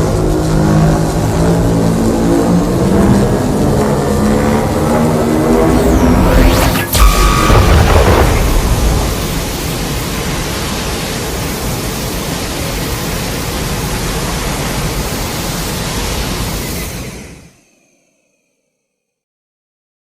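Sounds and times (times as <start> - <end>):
loud static-like rushing noise: 0.0 - 18.0
loud blast: 2.7 - 14.4.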